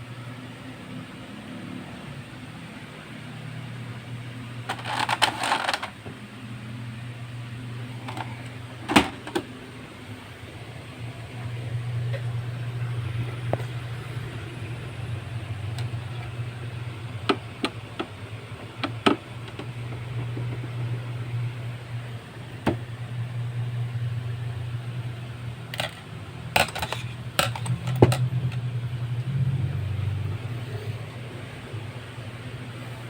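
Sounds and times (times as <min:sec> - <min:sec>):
steady low hum: 0:02.3 - 0:33.0
plastic parts clicking: 0:04.7 - 0:06.0, 0:25.7 - 0:28.6.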